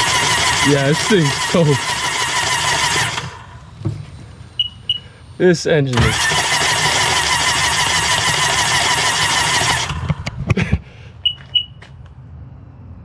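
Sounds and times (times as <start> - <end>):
electric starter cranking engine: 0.0 - 10.4
knocks and thump: 3.2 - 4.4.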